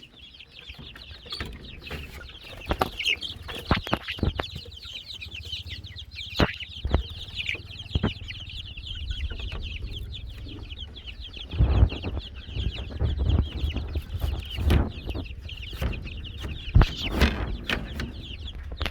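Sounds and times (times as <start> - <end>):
chickens clucking: 0.0 - 18.9
chicks peeping: 0.0 - 18.9
low rumble: 6.7 - 18.9
knocks: 11.6 - 18.9.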